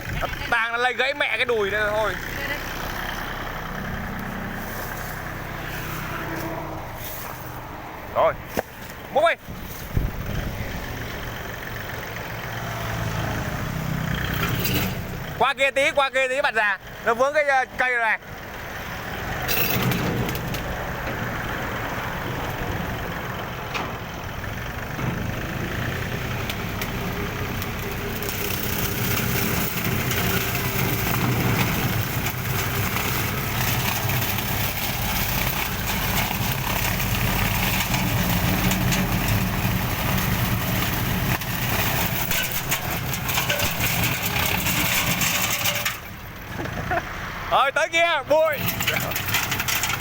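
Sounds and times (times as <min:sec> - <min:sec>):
lawn mower engine running: 0:00.0 - 0:15.9, 0:18.2 - 0:50.0
rough rattling noise: 0:18.8 - 0:46.7, 0:47.8 - 0:50.0.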